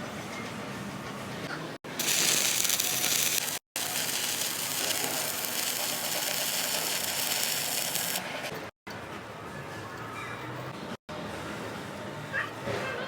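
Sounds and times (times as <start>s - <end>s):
welding arc crackling and hissing: 1.9s - 8.4s.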